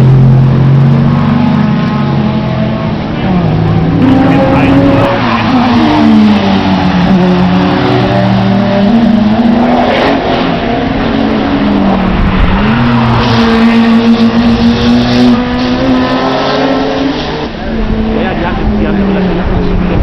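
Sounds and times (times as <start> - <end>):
racing car engines passing: 0.0 - 20.0.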